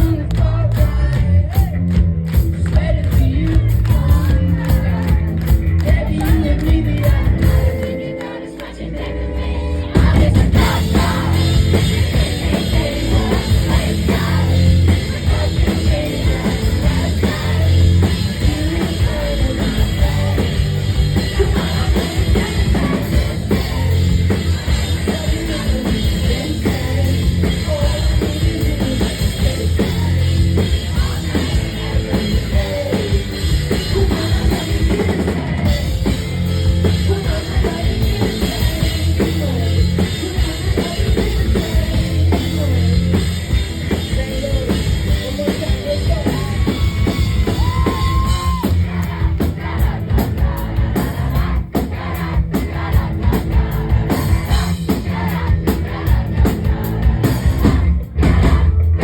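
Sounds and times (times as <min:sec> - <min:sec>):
drum kit: 0:00.0 - 0:08.3, 0:09.9 - 0:59.0
live rock band playing: 0:00.0 - 0:59.0
person singing: 0:02.8 - 0:43.3.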